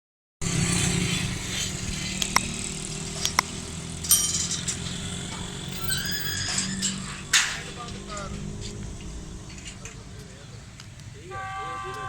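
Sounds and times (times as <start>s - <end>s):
train rolling rumble: 0.4s - 12.0s
wheels clacking over rail joints: 0.4s - 12.0s
high squeal: 4.2s - 10.6s.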